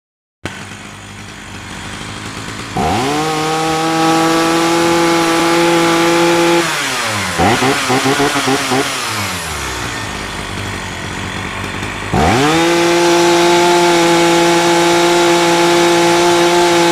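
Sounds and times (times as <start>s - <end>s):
chainsaw revving: 0.5s - 16.9s.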